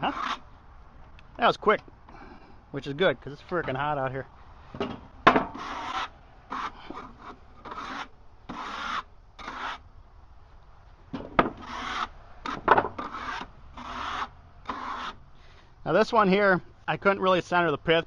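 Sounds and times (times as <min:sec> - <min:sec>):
scraping strokes across wood: 0:00.0 - 0:00.5, 0:05.4 - 0:09.8, 0:11.4 - 0:15.2
sharp wooden knocks: 0:04.8 - 0:05.7, 0:11.1 - 0:11.9, 0:12.5 - 0:13.2.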